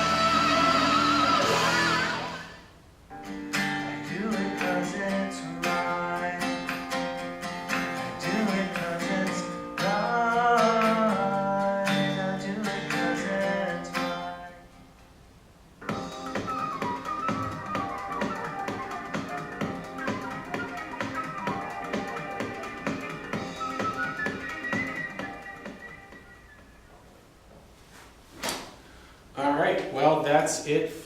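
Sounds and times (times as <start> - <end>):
person singing: 0.0 - 2.7, 3.9 - 6.8, 8.1 - 14.6
song from a speaker: 0.0 - 2.7, 3.8 - 6.9, 7.7 - 14.6, 15.9 - 27.0.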